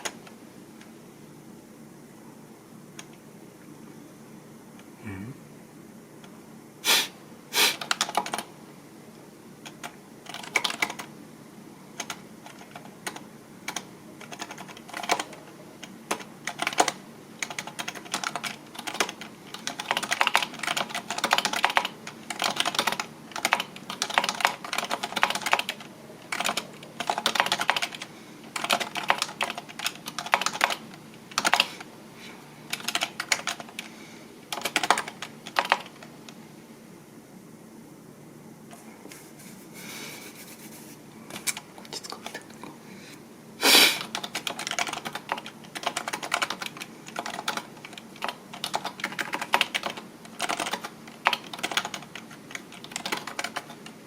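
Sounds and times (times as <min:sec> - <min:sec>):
computer keyboard typing: 0:00.0 - 0:00.3, 0:07.8 - 0:08.5, 0:09.6 - 0:11.1, 0:11.9 - 0:31.9, 0:32.7 - 0:33.9, 0:34.5 - 0:36.1, 0:44.0 - 0:54.0.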